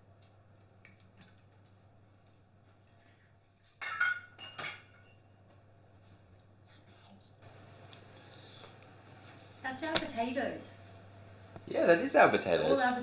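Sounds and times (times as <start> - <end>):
utensils clinking on dishes: 3.8 - 5.2.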